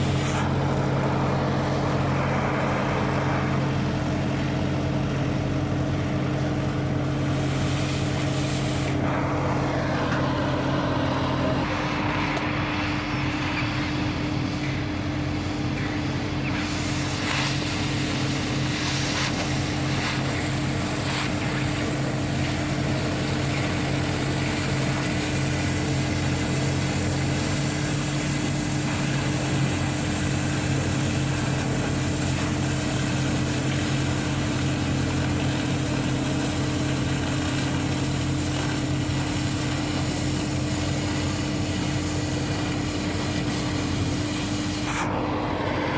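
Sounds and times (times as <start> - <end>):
machine hum: 0.0 - 45.9.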